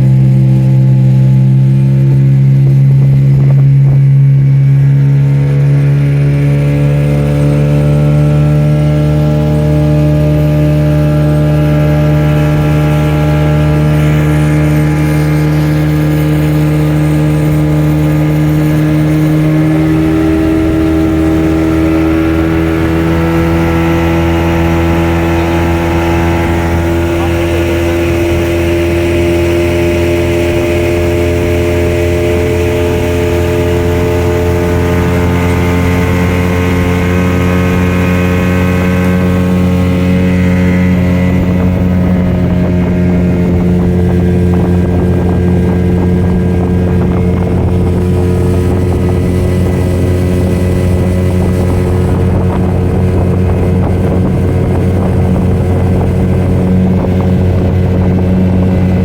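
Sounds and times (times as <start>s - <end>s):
motorboat engine running: 0.0s - 59.0s.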